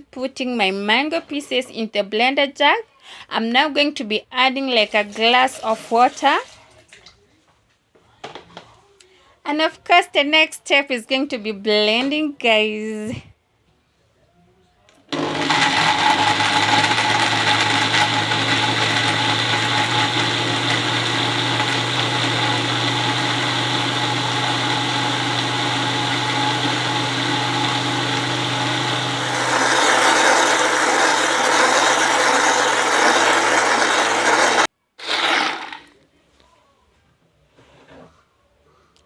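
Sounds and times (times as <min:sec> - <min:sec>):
blender motor running: 0:15.1 - 0:35.9.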